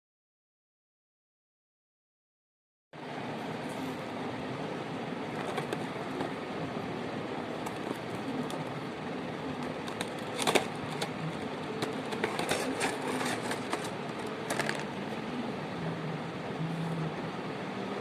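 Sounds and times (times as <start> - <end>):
plastic packaging crackling: 11.8 - 14.9.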